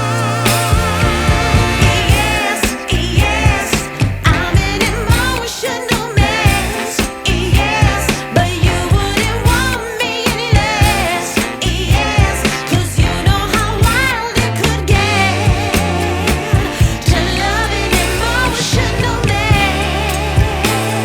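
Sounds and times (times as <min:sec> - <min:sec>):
song with steady beat: 0:00.0 - 0:21.0.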